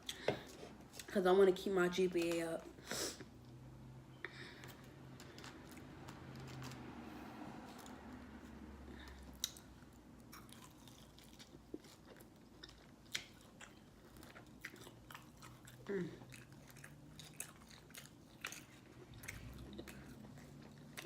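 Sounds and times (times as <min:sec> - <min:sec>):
person chewing food: 0:04.2 - 0:21.0.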